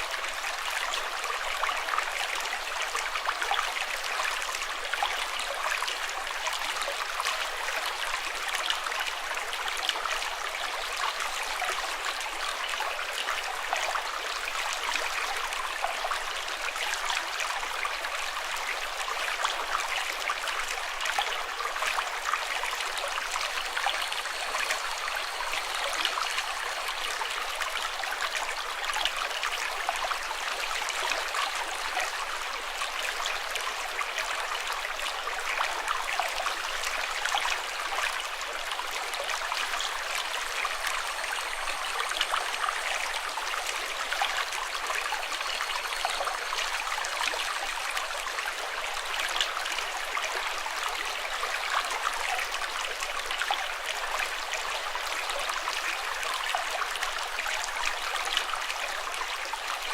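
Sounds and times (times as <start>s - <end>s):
running water trickling: 21.5s - 33.0s.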